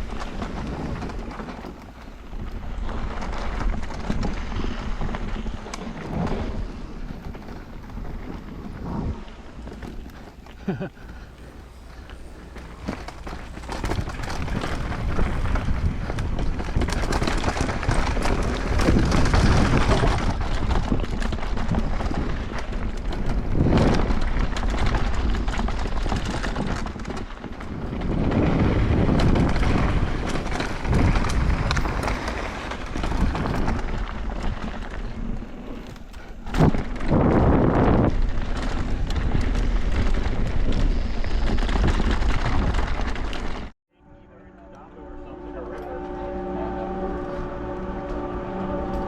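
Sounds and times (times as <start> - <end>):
bike clicks and rattles: 0.0 - 43.8
tyres rumbling on dirt: 0.0 - 43.8
wind buffeting microphone: 0.0 - 43.8.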